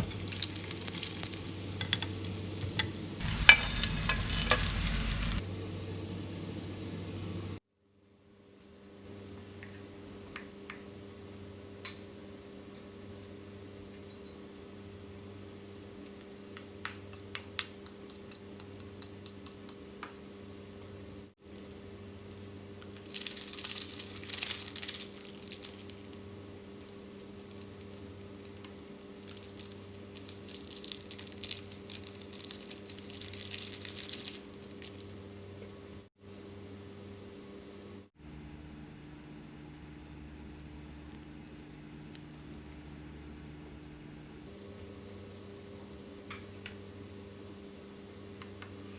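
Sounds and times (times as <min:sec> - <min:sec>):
utensil clinking on metal: 0:00.0 - 0:05.4
electrical hum: 0:00.0 - 0:07.6.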